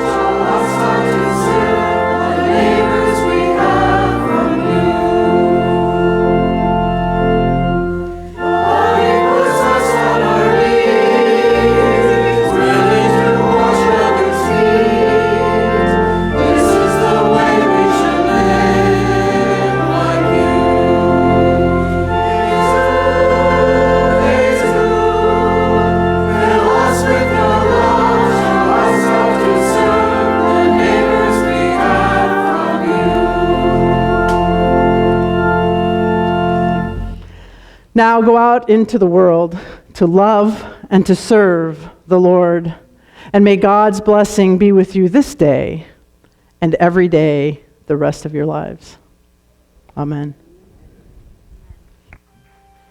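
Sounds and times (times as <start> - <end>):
choir singing: 0.0 - 37.3
organ chords: 0.0 - 38.6.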